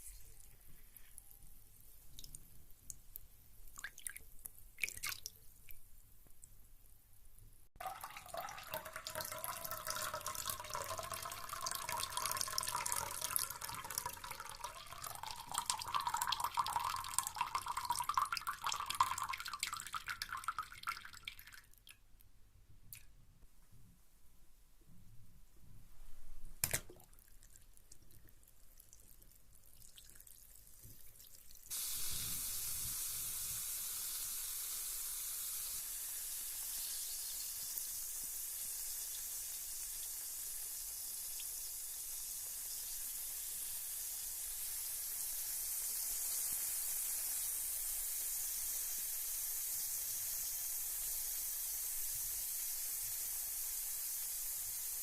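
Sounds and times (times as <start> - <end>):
water dripping: 2.0 - 6.6, 7.8 - 22.0, 26.6 - 33.5
bath bomb fizzing hiss: 7.8 - 19.4, 31.7 - 55.0.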